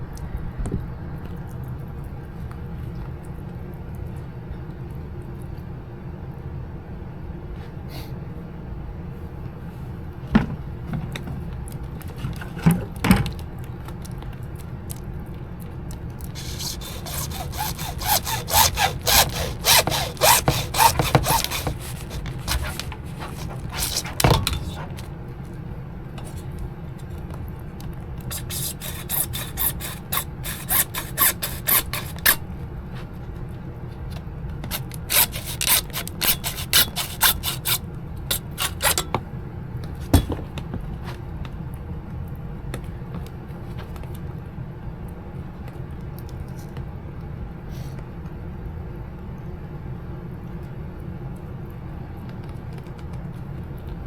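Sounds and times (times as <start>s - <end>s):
hand saw cutting pipe: 16.2s - 25.1s, 28.3s - 32.4s, 34.6s - 39.2s.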